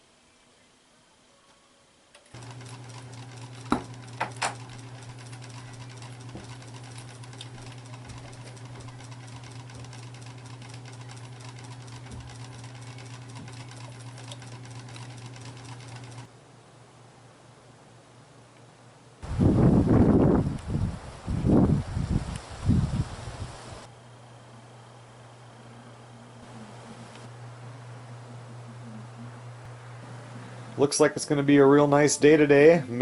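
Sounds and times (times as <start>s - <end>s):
small motor humming: 2.3s - 16.3s.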